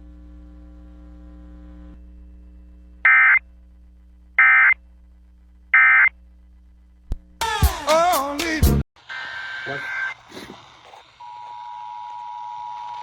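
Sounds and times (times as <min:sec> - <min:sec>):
faint steady hum: 0:00.0 - 0:07.4.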